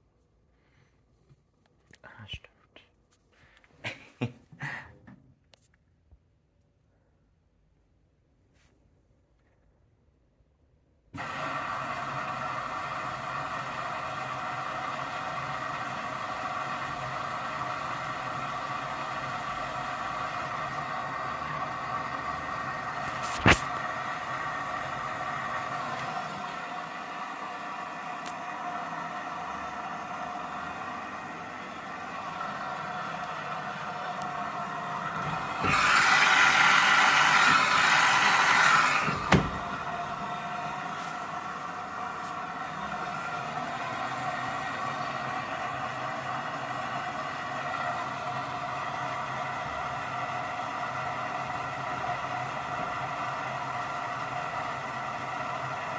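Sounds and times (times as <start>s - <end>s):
washing machine running: 11.2s - 55.9s.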